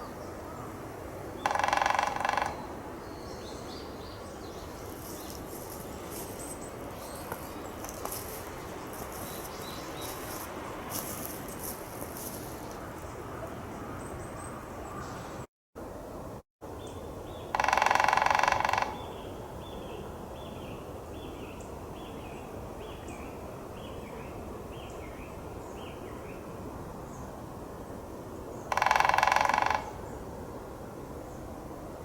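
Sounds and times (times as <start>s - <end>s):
outdoor background noise: 0.0s - 32.0s
loud harsh bird calls: 1.4s - 2.8s.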